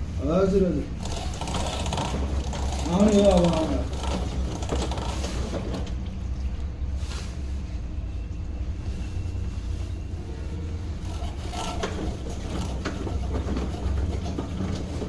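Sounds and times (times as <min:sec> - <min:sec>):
washing machine running: 0:00.6 - 0:06.5, 0:10.5 - 0:15.0.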